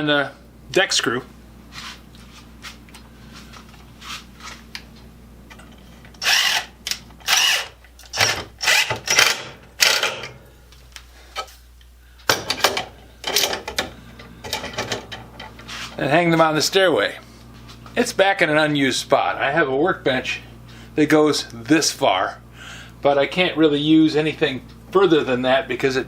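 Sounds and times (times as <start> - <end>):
low steady hum: 0.0 - 26.0
power driver driving screw into wood: 6.2 - 10.2.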